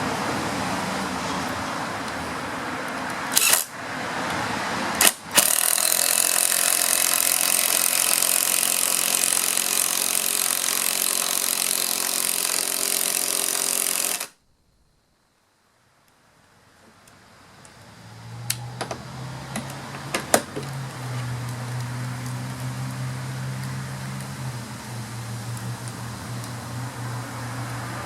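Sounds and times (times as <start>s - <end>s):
impact driver rattling: 5.0s - 14.3s, 19.6s - 20.8s.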